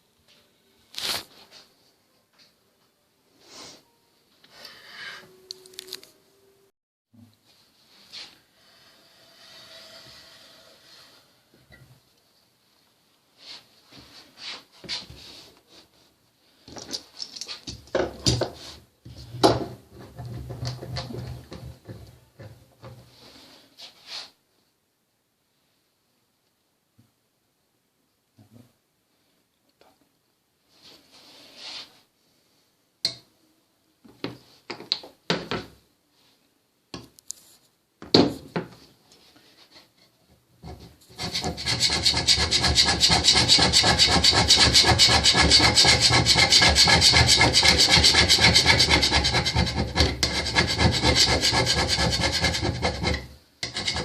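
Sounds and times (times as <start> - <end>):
hand scraper scraping metal: 40.6 - 54.0.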